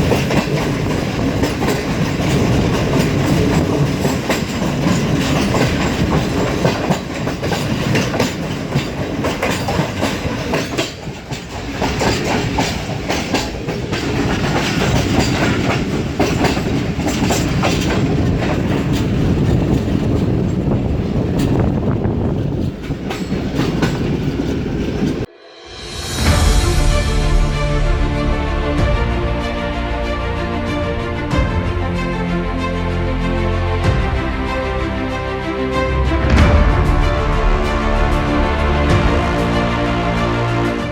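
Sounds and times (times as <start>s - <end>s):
train wheels clattering over rails: 0.0s - 25.3s.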